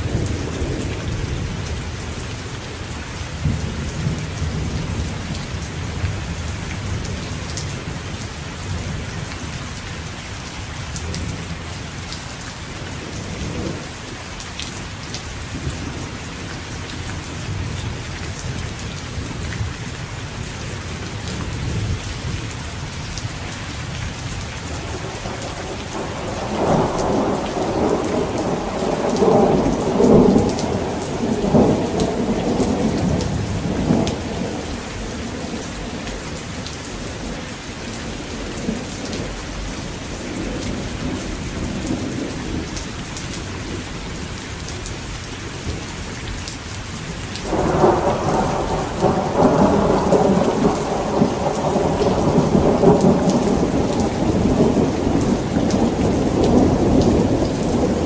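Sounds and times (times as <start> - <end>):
steady rain falling: 0.0 - 58.0
thunder rumbling: 24.7 - 37.4, 47.4 - 58.0.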